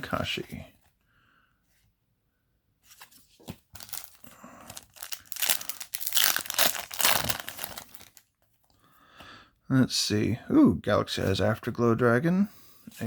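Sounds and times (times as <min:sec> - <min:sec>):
foil wrapper crinkling and tearing: 0:03.8 - 0:08.3.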